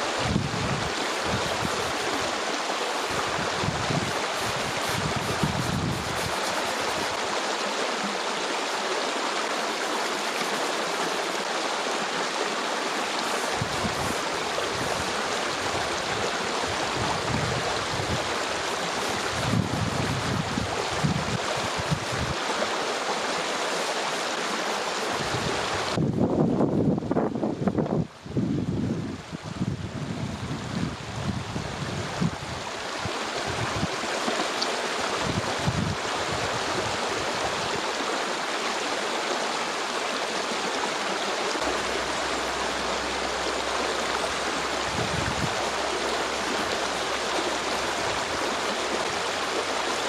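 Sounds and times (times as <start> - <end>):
stream water rushing: 0.0 - 50.0
wind buffeting microphone: 0.1 - 2.3, 3.1 - 6.4, 13.5 - 22.4, 25.2 - 34.0, 35.0 - 37.8, 43.5 - 49.9.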